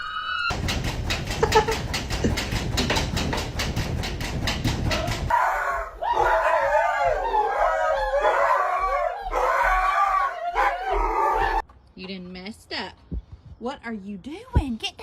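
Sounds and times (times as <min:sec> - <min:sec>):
rapid tapping: 0:00.5 - 0:05.3
dog howling: 0:05.3 - 0:11.6.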